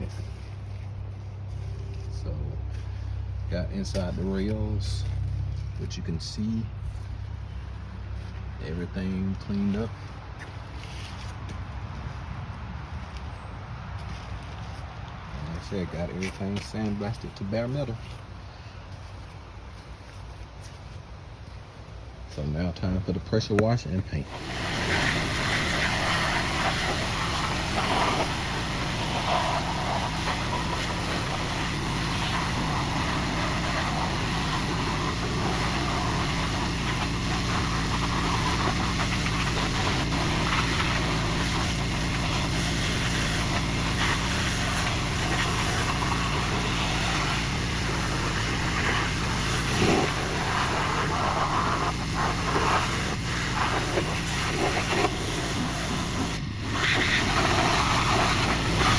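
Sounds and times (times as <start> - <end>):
pressure washer engine humming: 0.0 - 12.2, 24.1 - 58.9
water jet hissing: 24.2 - 58.9.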